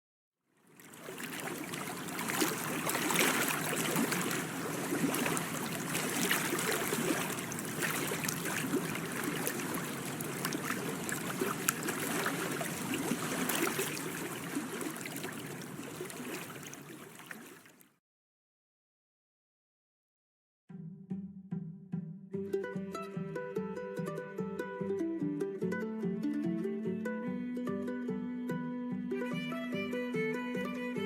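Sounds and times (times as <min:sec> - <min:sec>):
water trickling and lapping: 0:00.6 - 0:18.0
small crackling splashes: 0:00.7 - 0:18.0.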